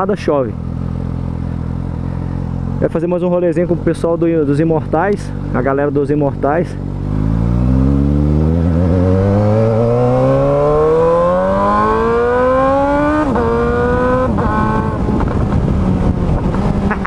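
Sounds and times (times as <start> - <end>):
motorcycle engine accelerating: 0.0 - 17.0.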